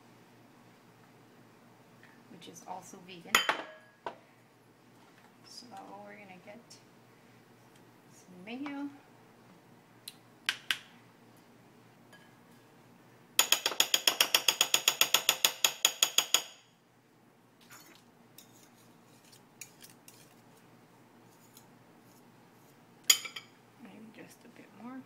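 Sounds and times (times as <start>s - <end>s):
utensil whisking in a bowl: 17.8s - 20.7s.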